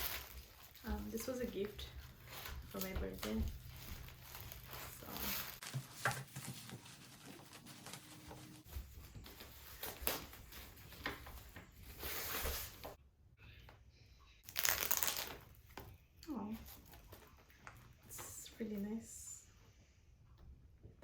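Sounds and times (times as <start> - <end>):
packaging rustling and crinkling: 0.0 - 13.0, 14.5 - 15.9.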